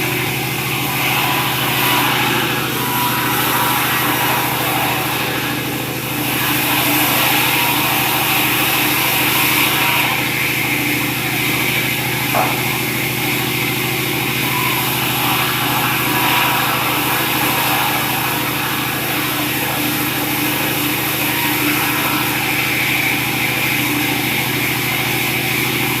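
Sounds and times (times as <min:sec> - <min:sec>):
sawmill machinery humming: 0:00.0 - 0:26.0.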